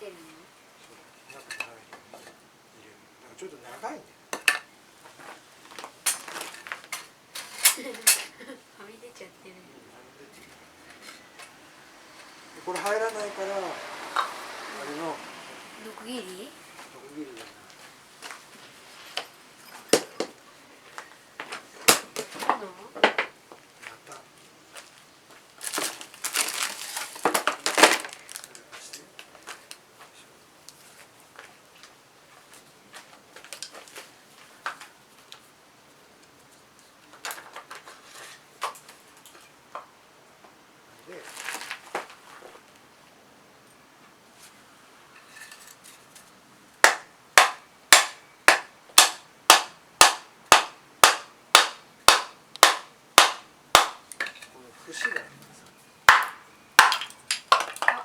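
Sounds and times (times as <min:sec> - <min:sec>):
rustling and crackling handling noise: 0:04.4 - 0:08.4, 0:16.6 - 0:39.7, 0:40.4 - 0:46.4.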